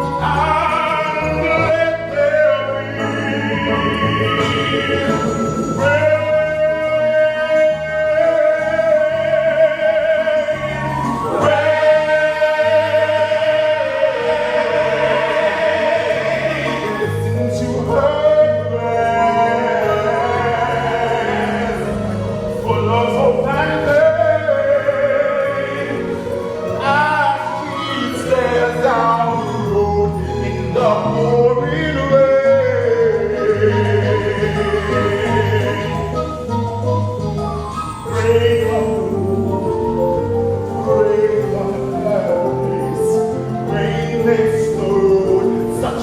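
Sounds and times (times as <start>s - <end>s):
person singing with vibrato: 0.0s - 46.0s.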